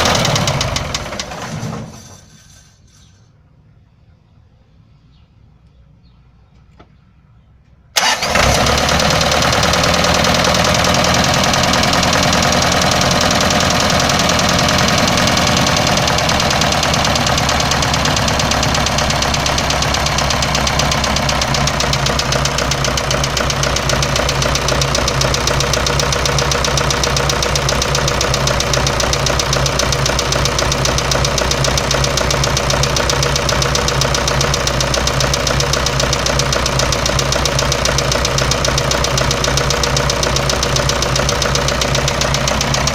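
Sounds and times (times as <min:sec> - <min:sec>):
diesel engine starting and idling: 0:00.0 - 0:02.2, 0:07.9 - 0:42.9
ringing engine knock: 0:09.7 - 0:42.9.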